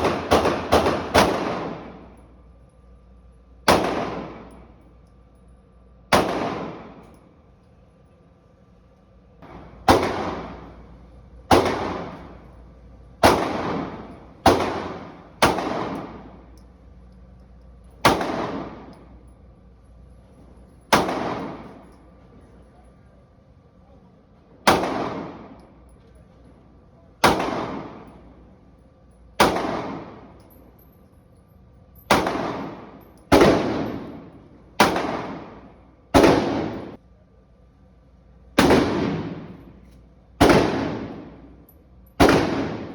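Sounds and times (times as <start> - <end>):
gunshots: 0.0 - 2.2, 3.7 - 4.6, 6.1 - 7.1, 9.4 - 12.5, 13.2 - 16.5, 18.0 - 19.1, 20.9 - 21.9, 24.6 - 25.6, 27.2 - 28.3, 29.4 - 30.4, 32.1 - 37.0, 38.6 - 39.8, 40.4 - 41.5, 42.2 - 42.9.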